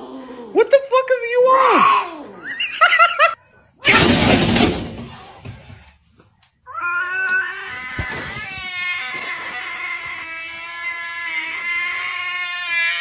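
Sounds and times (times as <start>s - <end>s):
cat yowling: 1.4s - 3.4s, 6.7s - 13.0s.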